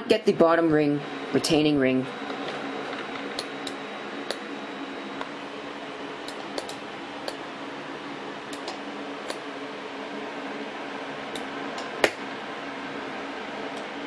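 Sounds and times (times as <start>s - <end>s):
steady low hum: 0.0s - 14.0s
computer mouse clicking: 6.3s - 7.4s.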